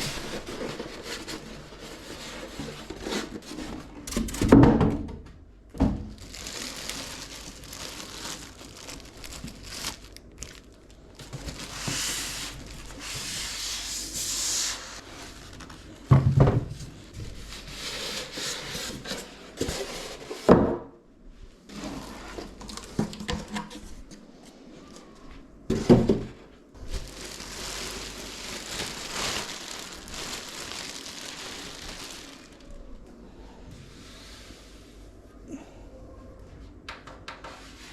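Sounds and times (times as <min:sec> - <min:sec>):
items thunking down: 0:00.0 - 0:09.8, 0:16.0 - 0:17.4, 0:25.7 - 0:32.6
packaging crinkling: 0:06.1 - 0:13.4, 0:26.8 - 0:33.0.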